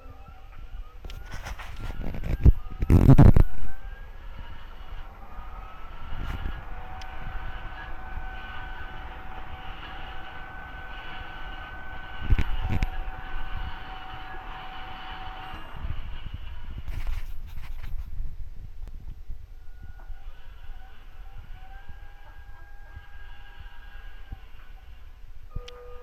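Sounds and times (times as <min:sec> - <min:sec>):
dryer motor whining: 0:00.0 - 0:26.0.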